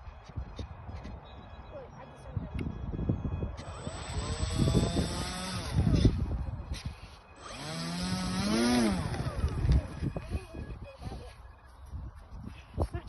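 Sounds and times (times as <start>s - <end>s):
model plane motor whining: 3.6s - 10.8s.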